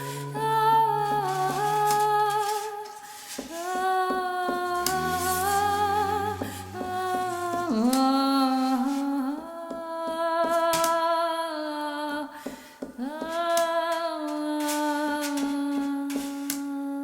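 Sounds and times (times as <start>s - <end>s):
person singing wordless notes: 0.0s - 9.8s.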